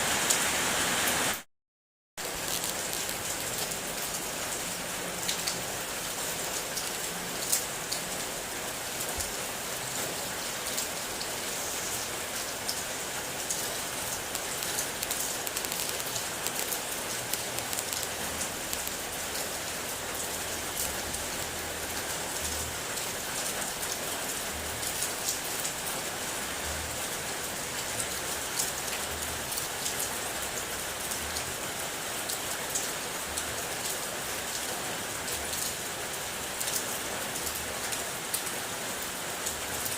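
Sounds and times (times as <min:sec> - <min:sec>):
rain hiss: 0:00.0 - 0:01.4, 0:02.2 - 0:39.9
raindrops tapping on hard surface: 0:02.2 - 0:04.3, 0:13.5 - 0:22.6.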